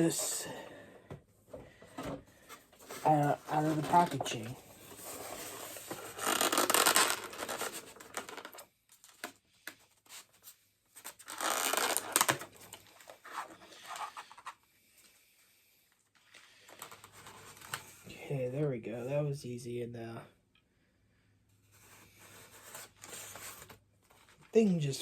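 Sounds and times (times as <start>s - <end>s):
packaging rustling and scraping: 1.6s - 9.3s, 21.8s - 24.5s.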